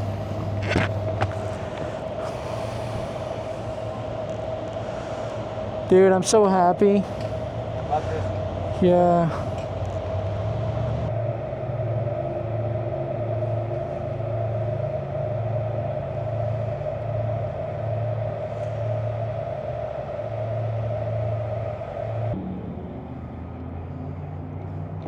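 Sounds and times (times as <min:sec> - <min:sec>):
motorcycle engine running: 0:00.0 - 0:02.2, 0:06.4 - 0:19.1.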